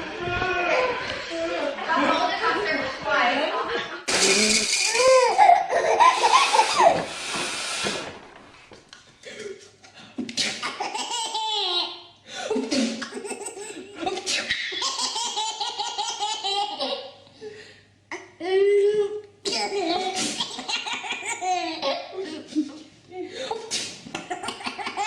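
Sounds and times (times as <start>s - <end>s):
people laughing: 0.0s - 6.8s.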